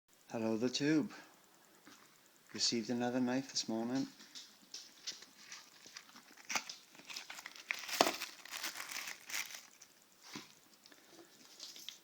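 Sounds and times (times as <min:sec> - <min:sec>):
plastic packaging crinkling: 0:03.9 - 0:12.0.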